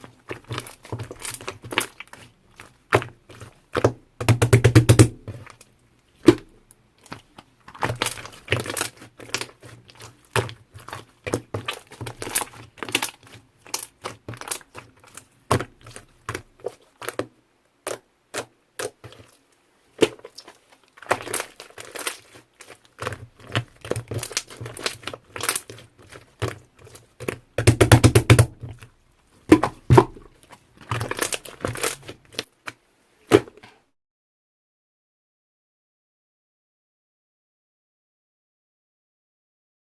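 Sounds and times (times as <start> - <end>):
slime squishing and popping: 20.0 - 28.7, 29.5 - 32.5.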